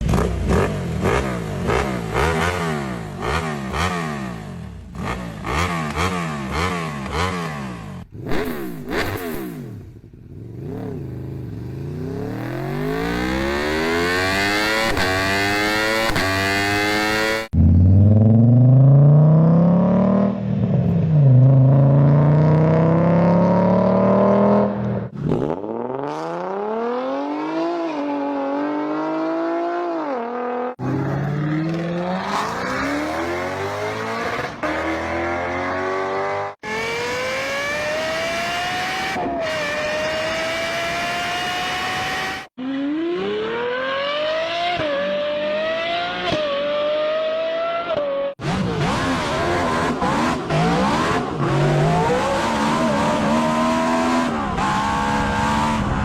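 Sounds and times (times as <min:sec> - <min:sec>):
car engine accelerating: 0:11.9 - 0:56.0.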